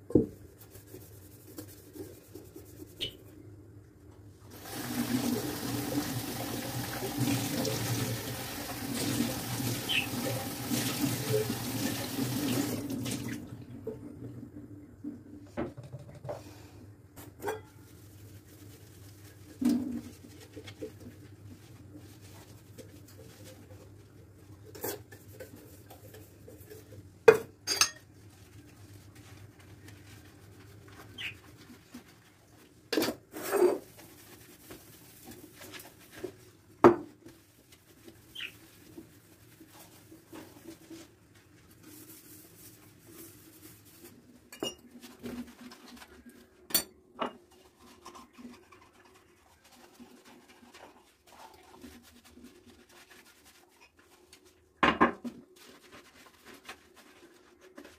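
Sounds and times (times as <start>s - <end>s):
dishes and cutlery clinking: 17.3s - 17.8s, 27.3s - 28.1s, 44.5s - 45.0s.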